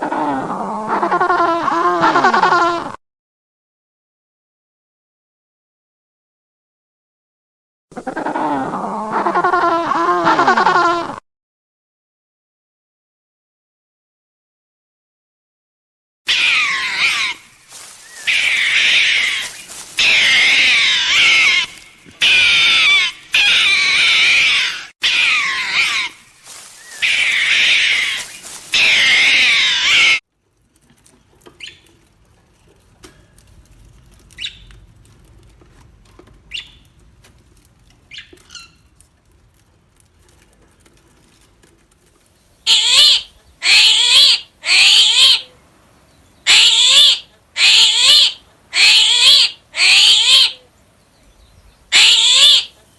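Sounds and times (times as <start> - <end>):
animal high wavering cries: 16.3 - 17.4, 18.1 - 26.2, 26.8 - 30.2, 42.7 - 45.5, 46.4 - 50.6, 51.9 - 52.8.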